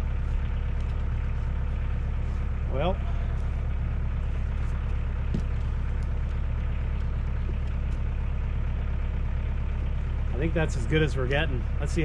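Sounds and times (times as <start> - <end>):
tractor diesel engine running: 0.0 - 12.0.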